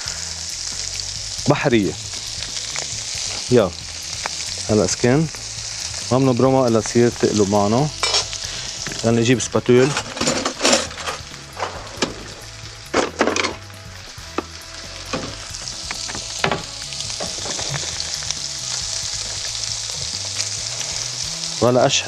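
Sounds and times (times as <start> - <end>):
fish sizzling in a frying pan: 0.0 - 22.0
spatula knocking and scraping pan: 15.1 - 17.8.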